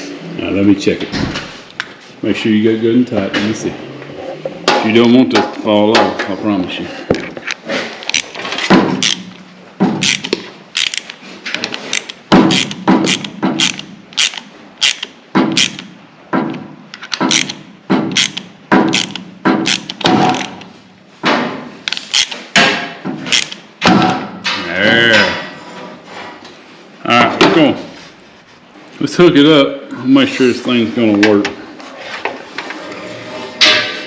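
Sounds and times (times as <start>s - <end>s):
hand ratchet clicking: 8.1s - 8.4s, 9.0s - 9.2s, 10.0s - 15.9s, 17.0s - 20.6s, 21.9s - 22.4s, 23.3s - 23.6s.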